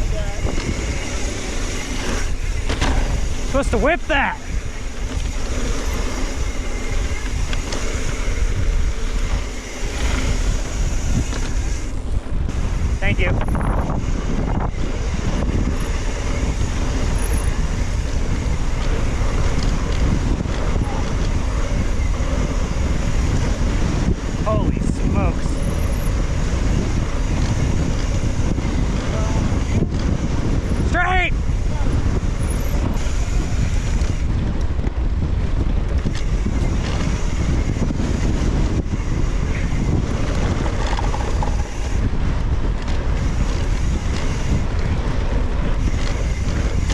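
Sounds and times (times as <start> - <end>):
bike tyres rolling on dirt: 0.0 - 46.9
wind buffeting microphone: 0.0 - 46.9.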